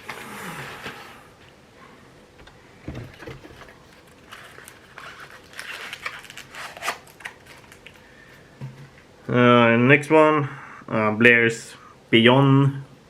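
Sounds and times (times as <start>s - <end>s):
light knocks and clicks: 2.4s - 3.8s
packaging rustling: 2.4s - 8.1s.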